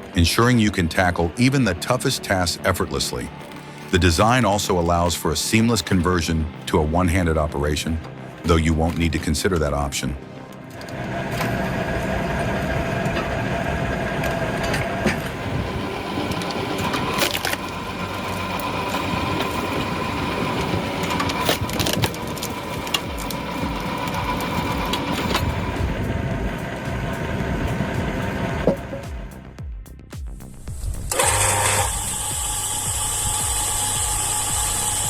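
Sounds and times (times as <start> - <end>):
hydraulic log splitter whine: 1.0 - 7.3, 10.4 - 29.5, 31.0 - 35.0
wood cracking and splitting: 1.8 - 7.2, 10.4 - 26.0.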